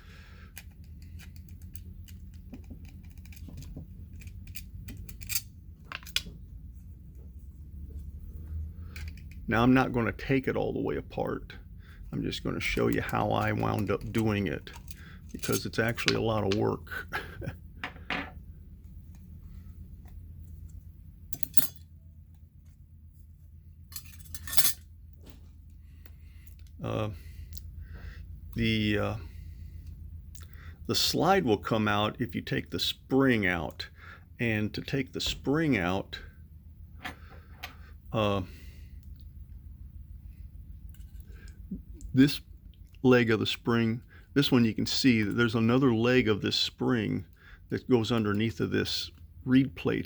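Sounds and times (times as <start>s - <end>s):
steady low hum: 0.0s - 50.0s
metallic clinks and scrapes: 3.0s - 6.2s, 14.7s - 15.8s, 21.3s - 21.9s, 23.9s - 24.9s, 40.9s - 41.4s.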